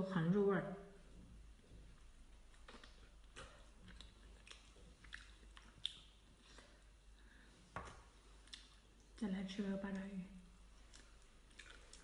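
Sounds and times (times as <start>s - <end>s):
person chewing food: 1.2s - 7.2s, 8.0s - 9.2s, 10.6s - 12.0s.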